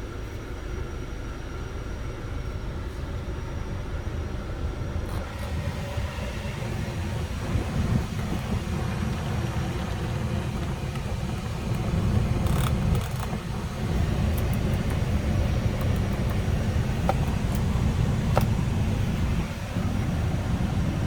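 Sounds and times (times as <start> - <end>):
vehicle rumble: 2.1 - 21.0.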